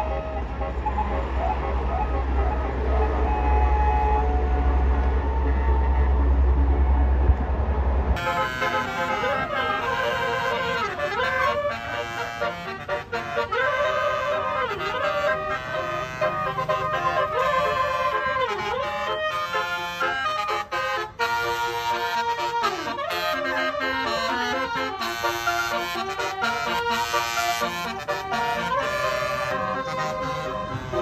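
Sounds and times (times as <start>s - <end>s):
multi-trumpet horn playing a tune: 8.2s - 31.0s.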